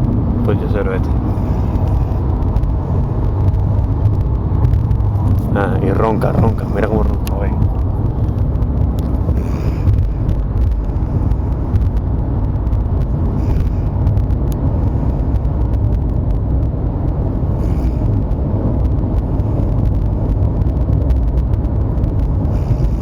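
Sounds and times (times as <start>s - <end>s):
car rumbling on road: 0.0s - 23.0s
man snoring: 0.6s - 3.2s, 5.3s - 7.6s.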